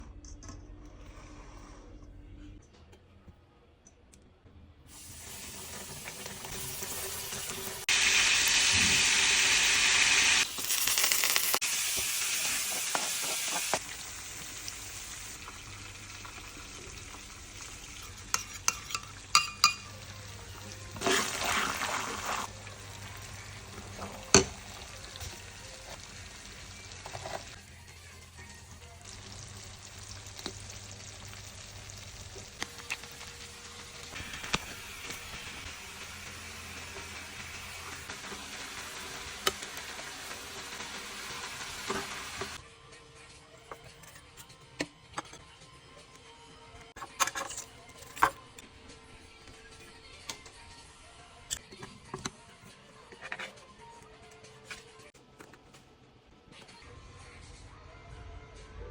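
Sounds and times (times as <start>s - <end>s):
chicken wings sizzling: 4.9s - 42.6s.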